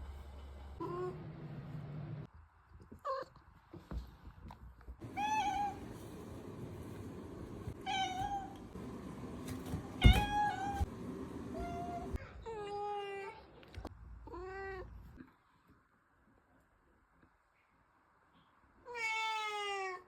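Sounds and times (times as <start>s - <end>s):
cat meowing: 5.0s - 5.8s, 7.8s - 8.6s.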